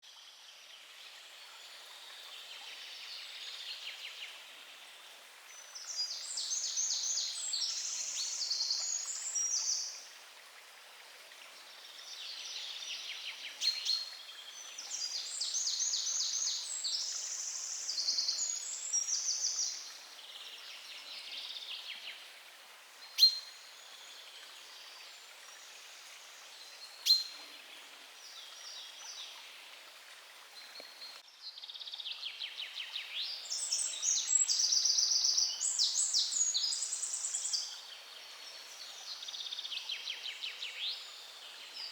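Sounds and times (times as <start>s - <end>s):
faint steady hiss: 0.0s - 41.9s
songbirds singing: 30.6s - 41.9s.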